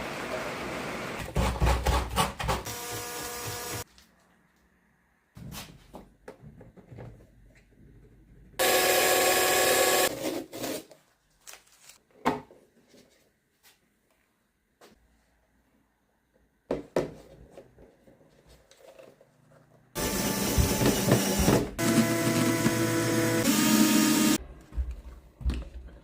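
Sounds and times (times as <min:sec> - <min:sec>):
small power tool whine: 0:08.6 - 0:10.1, 0:20.0 - 0:24.4.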